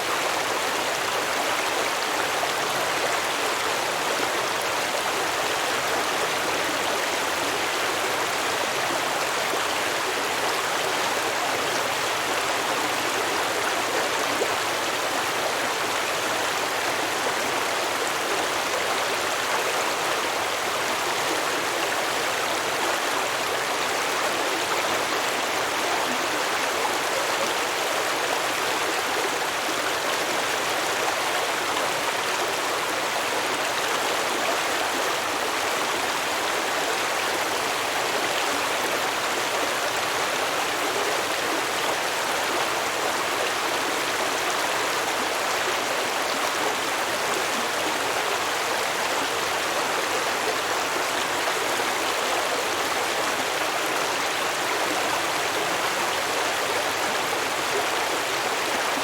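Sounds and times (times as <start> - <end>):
stream running over rocks: 0.0 - 59.0.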